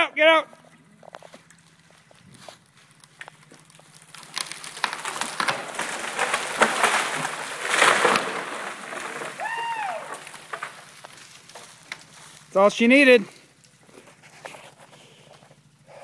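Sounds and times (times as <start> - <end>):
branches snapping and crashing: 1.0 - 13.0
wood cracking: 1.0 - 15.1.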